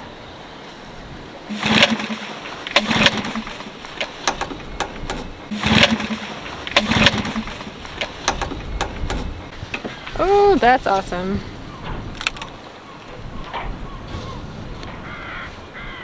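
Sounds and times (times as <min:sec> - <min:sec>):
outboard engine sputtering and running: 0:01.4 - 0:10.8
recoil starter cord yanks: 0:01.5 - 0:10.3.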